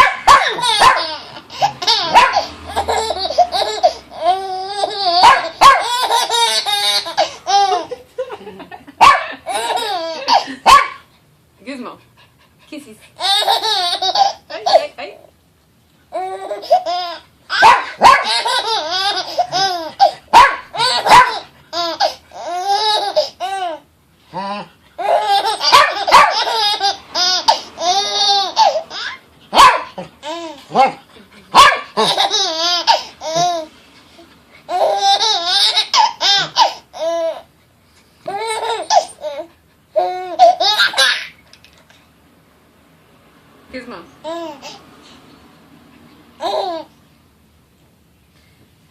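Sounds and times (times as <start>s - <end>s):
dog barking: 0.0s - 1.1s, 2.1s - 2.5s, 5.2s - 5.9s, 9.0s - 9.4s, 10.6s - 11.1s, 17.6s - 18.4s, 20.3s - 21.5s, 25.7s - 26.5s, 29.5s - 30.1s, 30.7s - 32.1s
baby laughing: 0.3s - 11.0s, 13.2s - 14.9s, 16.1s - 23.8s, 24.4s - 37.5s, 38.2s - 41.7s, 46.4s - 46.9s.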